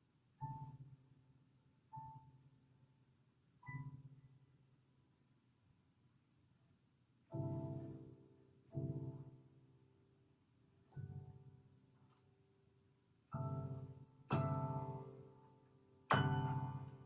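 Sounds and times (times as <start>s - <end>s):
piano chords ringing: 7.3s - 9.8s, 13.3s - 17.0s.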